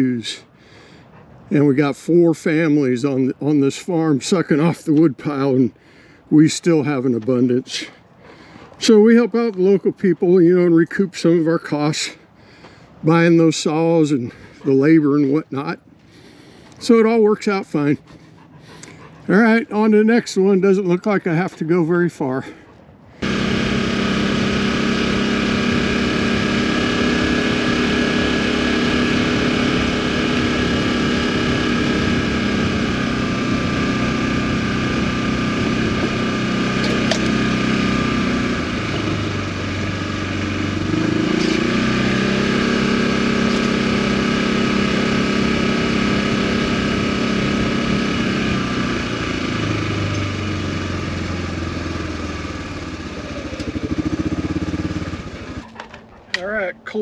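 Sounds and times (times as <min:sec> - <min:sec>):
utility vehicle engine running: 0:23.2 - 0:56.5.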